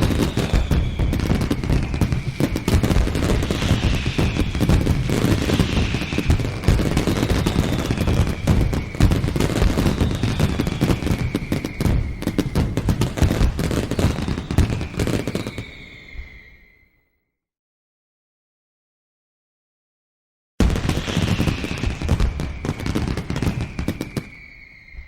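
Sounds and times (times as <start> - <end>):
falling whistling tones: 0.0 - 17.4, 20.8 - 25.0.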